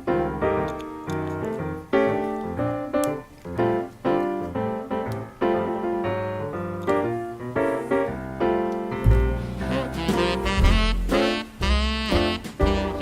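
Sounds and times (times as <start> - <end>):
piano music: 0.0 - 13.0
deep bass: 9.0 - 13.0.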